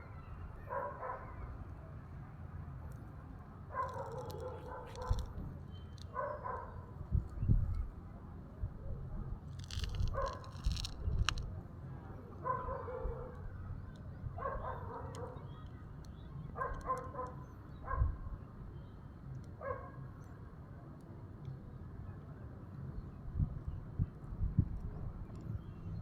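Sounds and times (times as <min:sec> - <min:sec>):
dog barking: 0:00.7 - 0:01.4, 0:03.7 - 0:05.3, 0:06.1 - 0:06.8, 0:12.4 - 0:13.4, 0:14.4 - 0:15.4, 0:16.6 - 0:18.2, 0:19.6 - 0:20.0.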